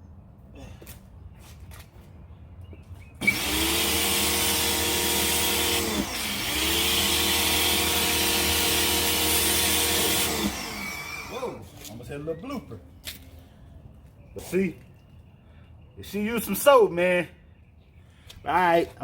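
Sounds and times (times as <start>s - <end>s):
electric pressure washer motor: 3.2s - 11.6s.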